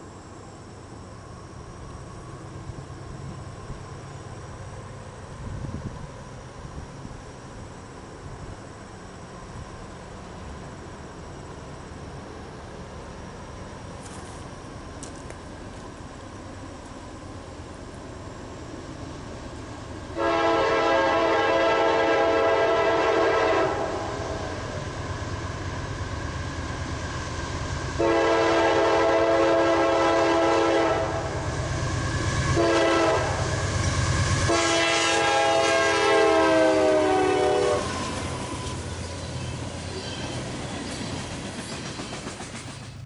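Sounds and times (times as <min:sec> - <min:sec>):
low rumble of moving train: 0:00.0 - 0:43.0
locomotive horn blasts: 0:20.2 - 0:24.2, 0:28.0 - 0:31.3, 0:32.6 - 0:33.5, 0:34.5 - 0:38.0.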